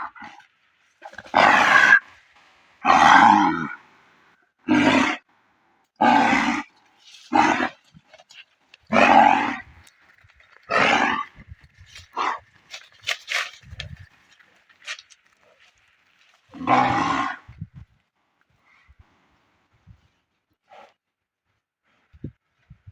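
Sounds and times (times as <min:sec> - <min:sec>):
bull groaning: 0:00.0 - 0:02.1, 0:02.8 - 0:03.8, 0:04.6 - 0:05.2, 0:06.0 - 0:13.6, 0:16.5 - 0:17.6.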